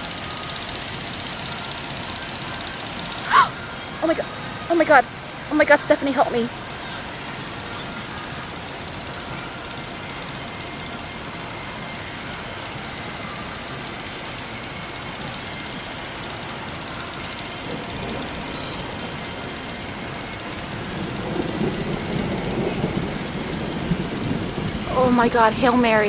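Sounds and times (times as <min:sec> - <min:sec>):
heavy rain hissing: 0:00.0 - 0:26.0
deep thunder rumble: 0:17.5 - 0:26.0.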